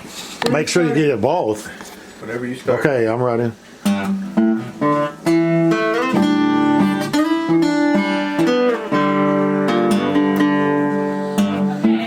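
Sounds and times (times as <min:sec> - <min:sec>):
acoustic guitar strumming: 0:03.6 - 0:12.0.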